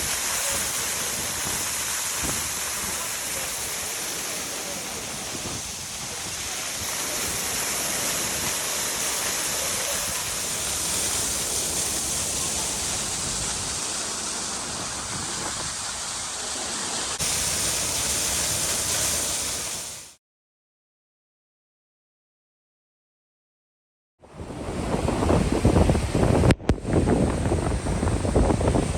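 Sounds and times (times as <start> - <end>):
rushing water hissing: 0.0 - 20.2.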